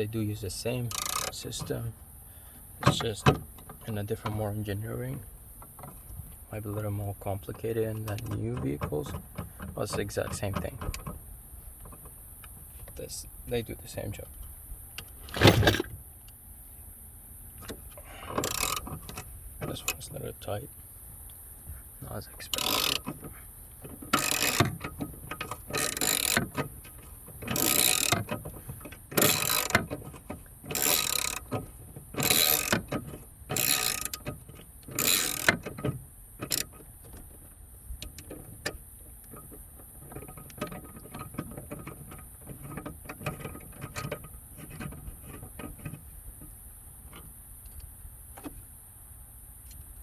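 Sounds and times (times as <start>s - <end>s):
ratchet wrench clicking: 0.9s - 1.4s, 18.4s - 18.8s, 22.5s - 23.2s, 24.1s - 28.4s, 29.2s - 29.9s, 30.7s - 31.6s, 32.2s - 32.9s, 33.5s - 34.2s, 34.9s - 35.6s, 36.4s - 36.7s.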